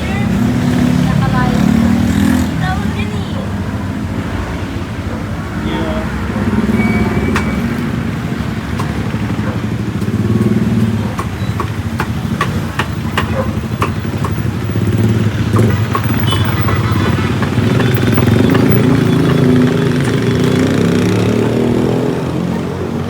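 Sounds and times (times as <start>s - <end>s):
motorcycle engine running: 4.9s - 23.0s.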